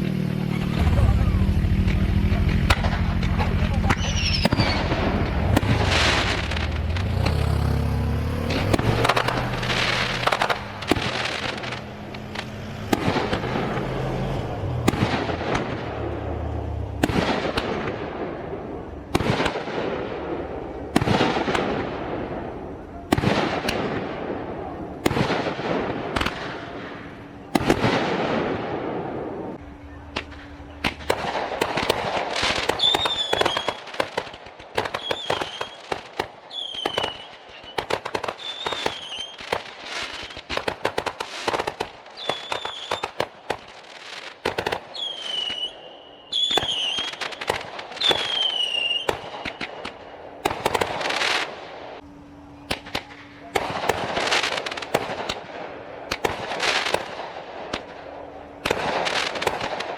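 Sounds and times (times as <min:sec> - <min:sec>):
fireworks bangs and crackling: 0:00.0 - 0:59.9
falling firework whistles: 0:03.9 - 0:15.8, 0:30.1 - 0:34.2, 0:34.8 - 0:43.3, 0:44.1 - 0:51.5.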